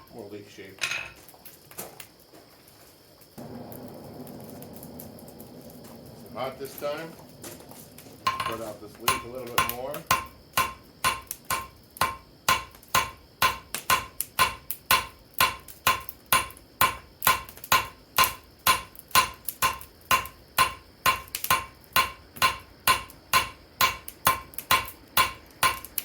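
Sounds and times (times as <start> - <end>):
hammer striking steel on anvil: 8.3 - 25.9.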